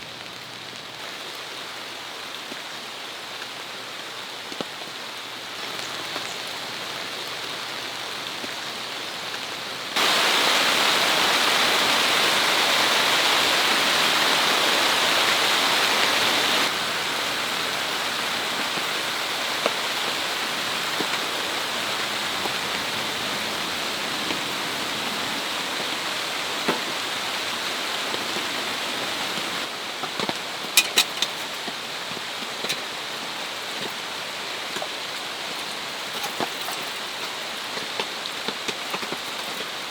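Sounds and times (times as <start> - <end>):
steady rainfall: 0.0 - 39.9.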